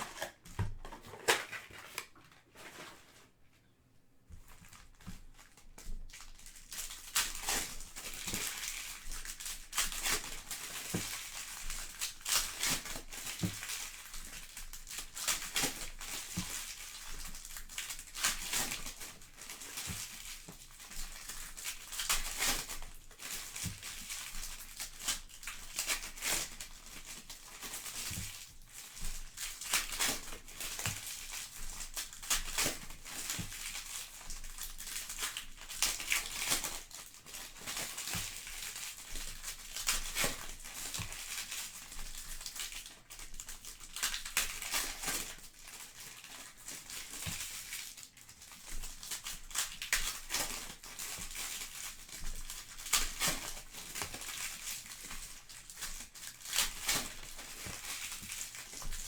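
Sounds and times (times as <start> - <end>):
card pack wrappers crinkling and tearing: 0.0 - 3.3, 4.6 - 59.0.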